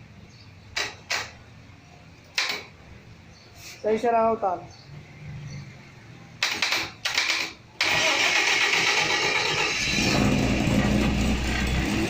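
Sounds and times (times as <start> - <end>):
electric starter cranking engine: 7.2 - 12.0
generator engine running: 7.8 - 12.0.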